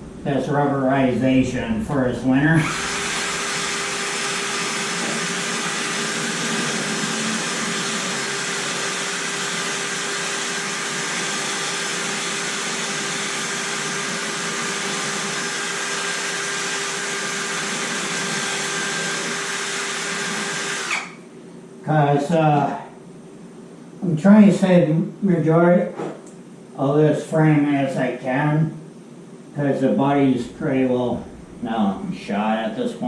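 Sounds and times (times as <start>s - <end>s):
power sander grinding metal: 2.6s - 21.0s.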